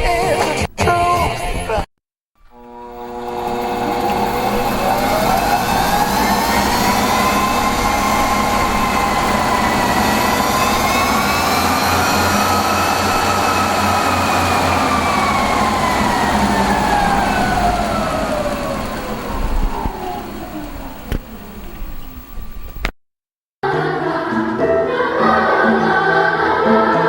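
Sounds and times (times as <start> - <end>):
siren-like whine: 2.5 - 22.9
steady engine noise: 2.6 - 22.8.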